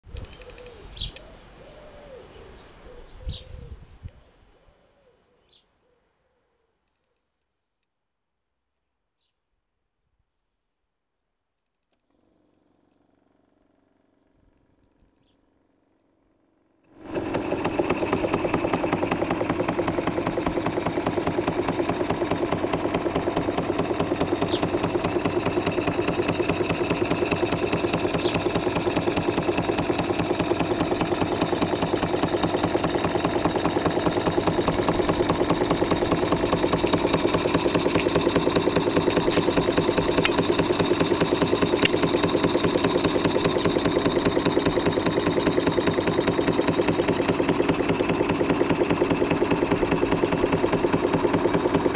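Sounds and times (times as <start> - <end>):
steam engine running: 17.0 - 51.9.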